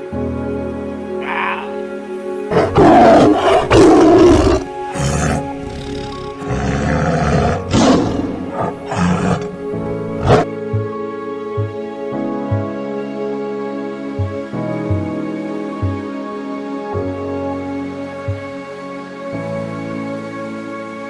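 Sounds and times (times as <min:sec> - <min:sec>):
soft background music: 0:00.0 - 0:21.0
large animal roaring and growling: 0:02.5 - 0:10.5.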